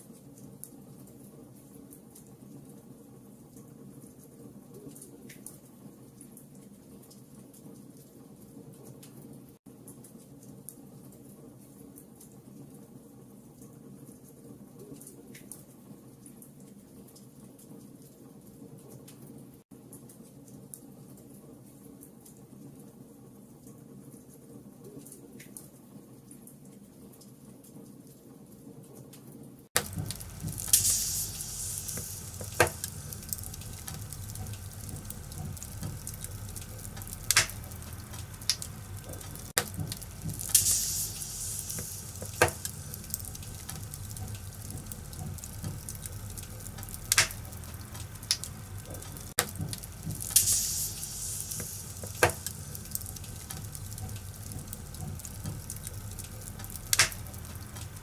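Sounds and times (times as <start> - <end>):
fire hissing bursts: 29.8 - 58.0
fire popping: 29.8 - 58.0
wood fire crackling: 29.8 - 58.0.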